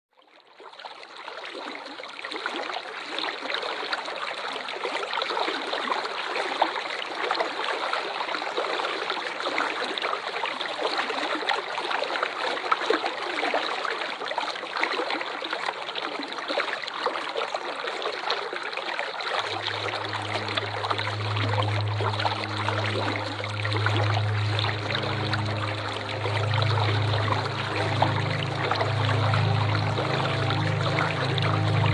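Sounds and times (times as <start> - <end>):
low musical drone: 19.4 - 31.9
waterfall rushing: 19.4 - 31.9.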